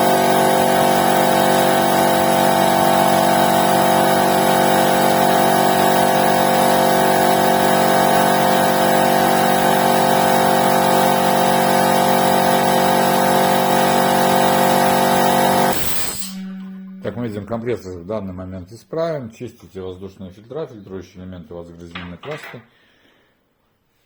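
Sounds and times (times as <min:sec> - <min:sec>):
piston air compressor running: 0:00.0 - 0:16.7.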